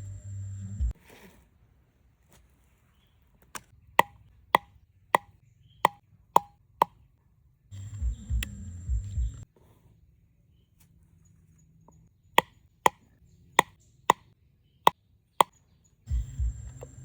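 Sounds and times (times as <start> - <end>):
low-pitched noise: 0.0 - 1.0, 7.8 - 9.4
thin steady high whine: 0.0 - 1.0, 7.8 - 9.4.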